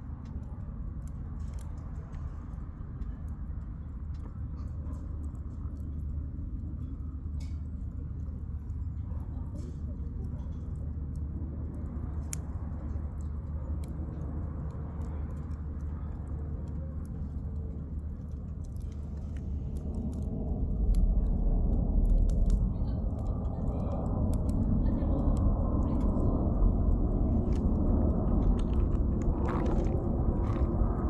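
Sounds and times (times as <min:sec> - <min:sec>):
low steady fire rush: 0:00.0 - 0:31.0
campfire crackling and popping: 0:09.7 - 0:31.0.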